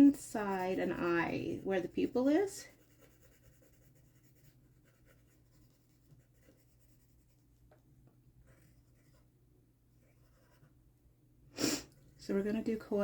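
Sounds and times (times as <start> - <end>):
pencil scratching on paper: 0.0 - 7.4, 8.4 - 9.3, 10.0 - 10.8
low steady hum: 0.0 - 13.0.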